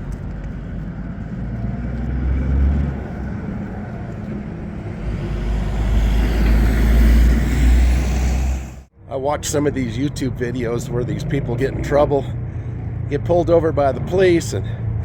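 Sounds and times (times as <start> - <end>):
cars passing on street: 0.0 - 9.1, 9.8 - 15.0.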